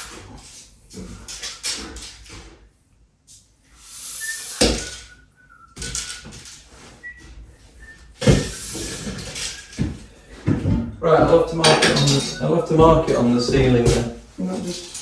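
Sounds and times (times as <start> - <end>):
person rummaging and handling things: 5.8 - 15.0.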